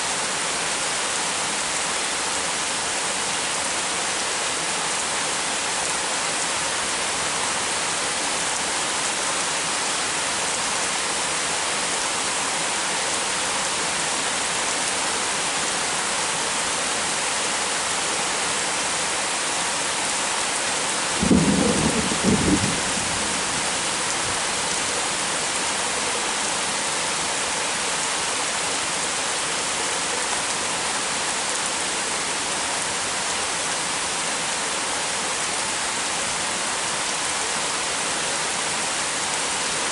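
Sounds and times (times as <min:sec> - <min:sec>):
heavy rain falling: 0:00.0 - 0:39.9
thunderclap: 0:21.2 - 0:23.7.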